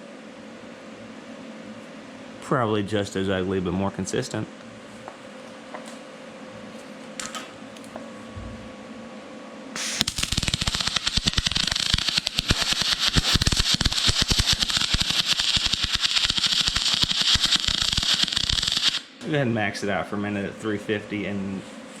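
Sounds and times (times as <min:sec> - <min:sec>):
faint machine hum: 0:00.0 - 0:17.9, 0:19.0 - 0:22.0
welding arc crackling: 0:09.8 - 0:19.2.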